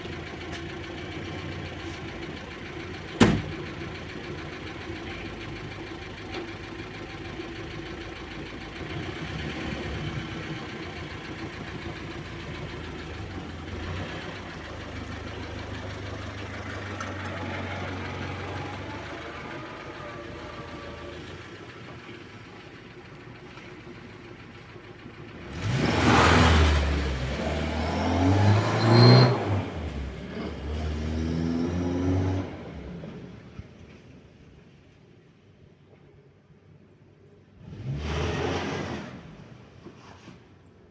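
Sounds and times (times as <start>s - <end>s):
car engine revving: 8.8s - 21.7s, 25.3s - 32.8s, 37.6s - 39.4s.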